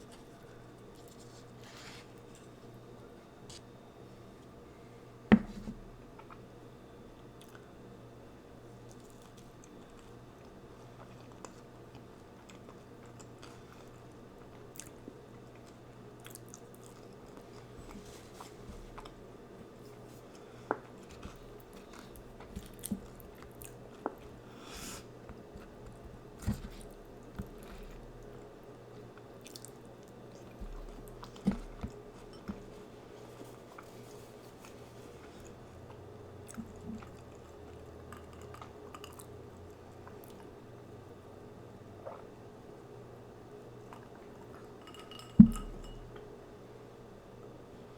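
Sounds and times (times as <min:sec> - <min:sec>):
faint steady hum: 0:00.0 - 0:47.9
person chewing food: 0:19.8 - 0:28.4, 0:29.0 - 0:40.5.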